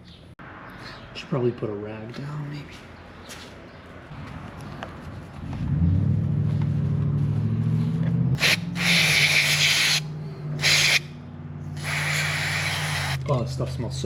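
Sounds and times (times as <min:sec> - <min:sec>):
aerosol spray hissing: 0:08.4 - 0:11.1, 0:11.8 - 0:13.2.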